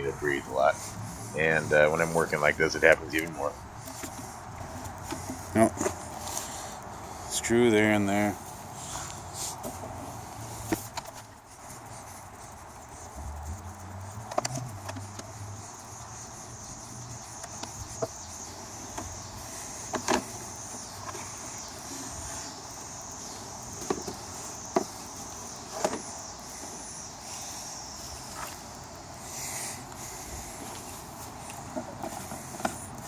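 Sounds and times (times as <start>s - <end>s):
handling noise: 8.4s - 33.0s.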